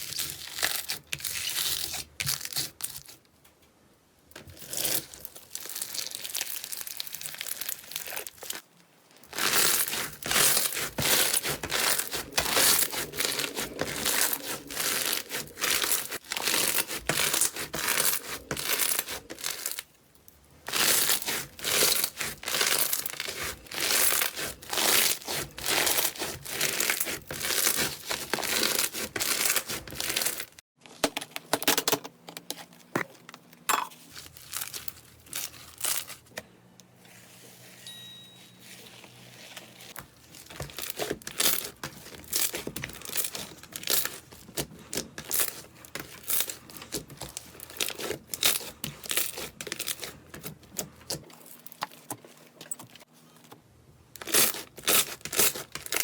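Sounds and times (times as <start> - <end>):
slime crackling and popping: 5.4 - 8.6.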